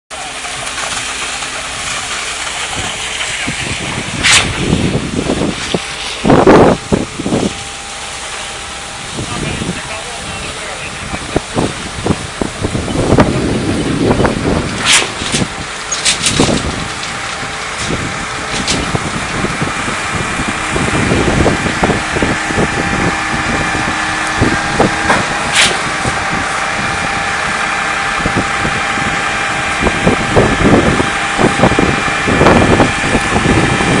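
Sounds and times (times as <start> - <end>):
high whine: 0.1 - 34.0
pump engine drone: 0.1 - 34.0
sharp clack: 4.2 - 4.6, 14.8 - 16.6, 25.1 - 25.8.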